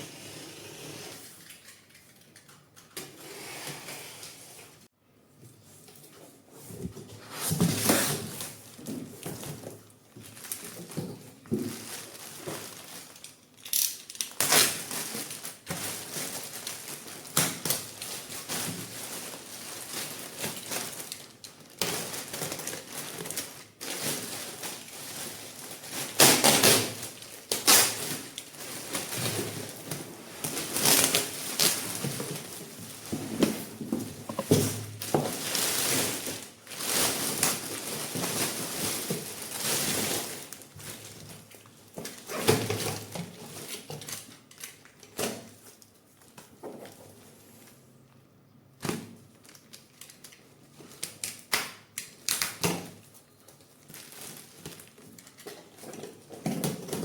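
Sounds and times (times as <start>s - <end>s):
packaging rustling: 7.0s - 47.3s, 49.2s - 57.0s
parts clattering: 33.2s - 35.4s.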